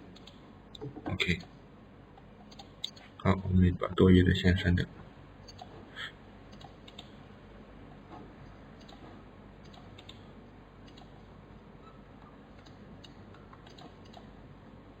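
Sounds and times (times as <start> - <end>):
mouse and keyboard clicks: 2.4 - 3.0, 6.5 - 7.1, 8.8 - 9.0, 9.6 - 10.2, 10.8 - 11.1, 12.6 - 14.3.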